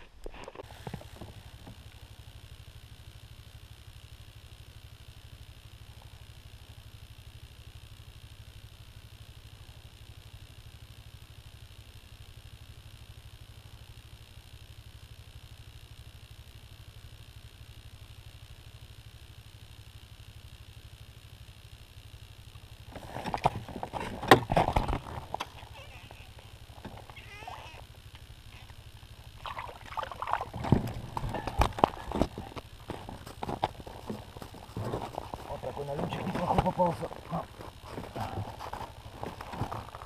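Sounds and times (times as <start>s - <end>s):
even hiss: 24.6s - 32.9s.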